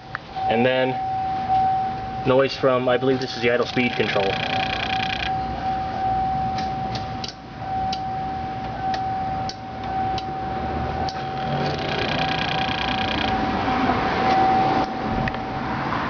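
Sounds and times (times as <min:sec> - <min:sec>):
steady electrical hum: 0:00.0 - 0:15.9
electrical clicking: 0:03.2 - 0:05.4, 0:11.0 - 0:13.5
high electrical buzz: 0:03.5 - 0:05.5, 0:11.0 - 0:13.8.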